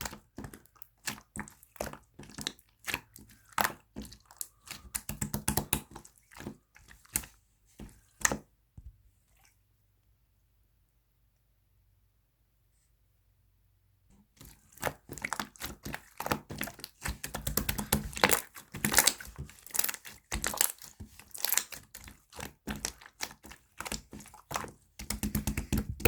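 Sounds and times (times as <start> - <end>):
slime crackling and popping: 14.8 - 26.0.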